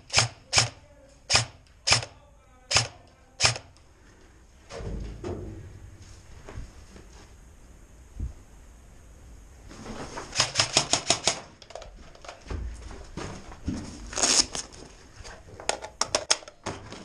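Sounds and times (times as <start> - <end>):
rapid airsoft gunfire: 0.0 - 3.7, 10.3 - 11.5.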